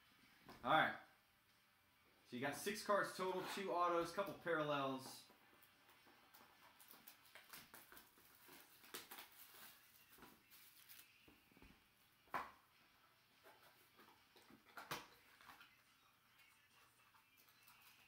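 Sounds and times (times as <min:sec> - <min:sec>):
card packaging rustling: 0:06.6 - 0:11.2.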